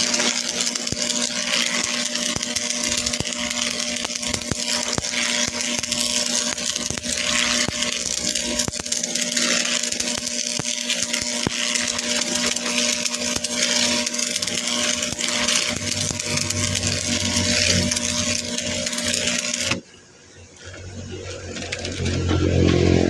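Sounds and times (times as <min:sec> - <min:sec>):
power tool grinding steel: 0:00.0 - 0:19.8, 0:20.6 - 0:23.0.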